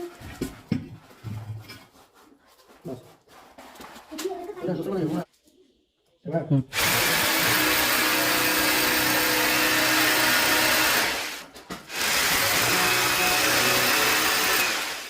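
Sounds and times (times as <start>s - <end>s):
electric drill running: 6.8s - 15.0s.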